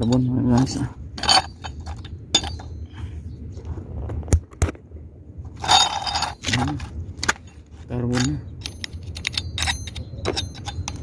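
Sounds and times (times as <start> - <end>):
metal tools clinking: 0.0 - 2.9, 5.6 - 11.0
metal scrape: 0.6 - 2.8, 5.5 - 11.0.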